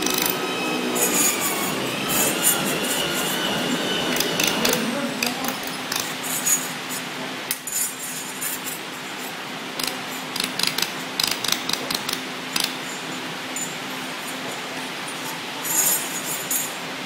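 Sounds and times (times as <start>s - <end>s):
metallic clicks and clinks: 4.4s - 16.8s.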